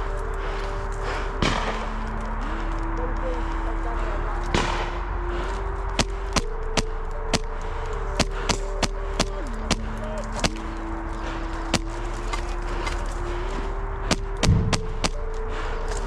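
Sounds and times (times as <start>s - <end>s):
steady low hum: 0.0s - 16.0s
airsoft gun shots: 14.4s - 15.2s.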